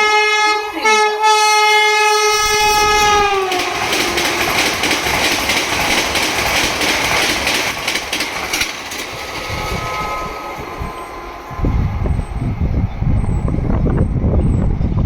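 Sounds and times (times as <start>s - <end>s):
locomotive horn: 0.0s - 4.8s, 9.4s - 12.9s
train rushing past: 0.0s - 15.0s
coaches clattering over rail joints: 3.4s - 11.1s.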